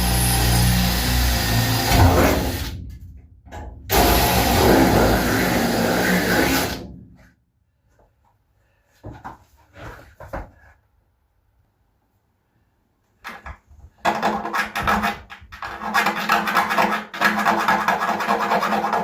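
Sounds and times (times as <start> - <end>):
drill wire brush scouring metal: 0.0 - 2.8, 3.9 - 6.8.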